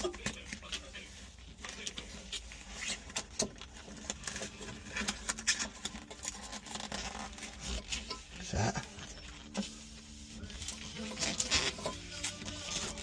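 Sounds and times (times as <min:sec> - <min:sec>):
pad being handled clicks and rustles: 0:00.0 - 0:08.4.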